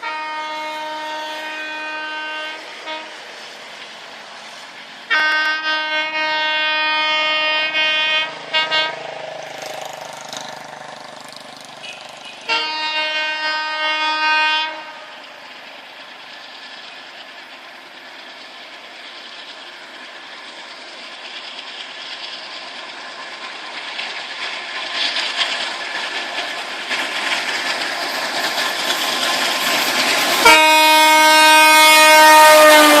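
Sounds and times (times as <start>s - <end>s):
loud horn blast: 0.0s - 3.2s, 5.1s - 9.1s, 11.8s - 15.2s, 30.4s - 33.0s
rushing rattling noise: 8.4s - 12.5s, 15.2s - 30.5s.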